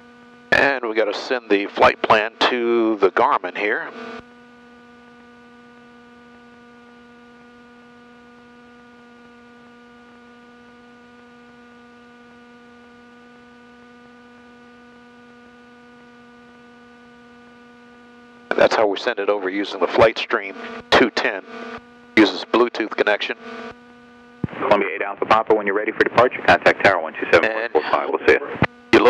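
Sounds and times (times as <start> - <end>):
steady electrical hum: 0.1 - 29.0.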